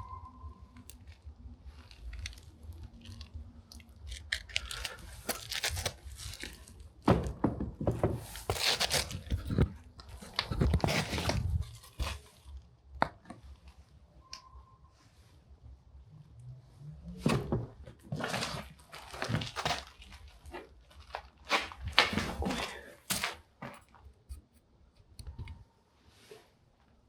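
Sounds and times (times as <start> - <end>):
footsteps crunching on rubble: 8.3 - 12.3, 17.9 - 24.0.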